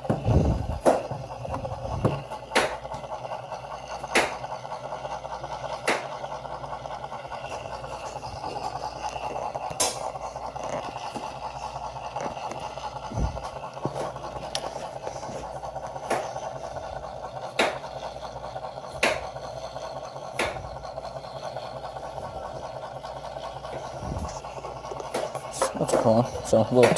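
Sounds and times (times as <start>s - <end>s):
mechanical hum: 0.0s - 26.9s.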